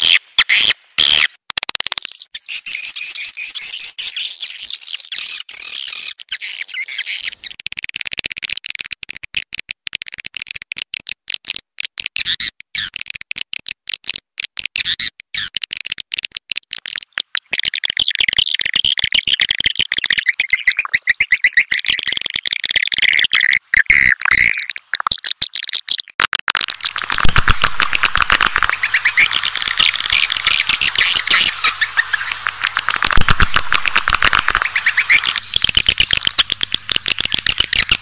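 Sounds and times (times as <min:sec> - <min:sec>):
swiftlets chirping and twittering: 0:02.0 - 0:07.6, 0:16.8 - 0:26.1, 0:26.7 - 0:38.0.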